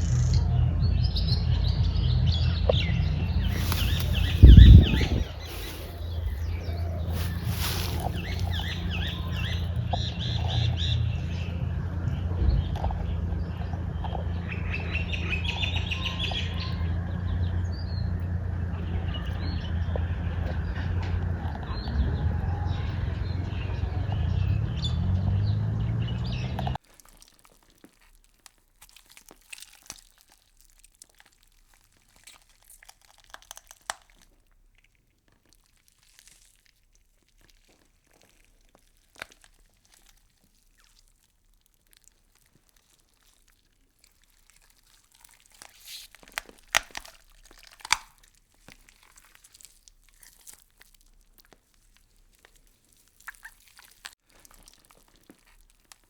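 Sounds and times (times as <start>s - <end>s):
insects chewing leaves crackling: 3.4s - 10.6s, 26.8s - 56.0s.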